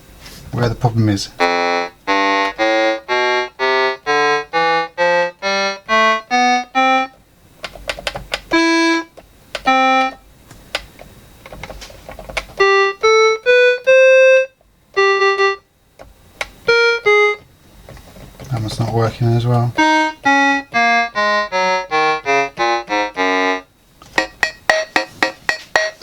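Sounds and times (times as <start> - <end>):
electronic keyboard notes: 0.6 - 26.0
keyboard key clacks: 7.6 - 9.8, 10.5 - 12.7.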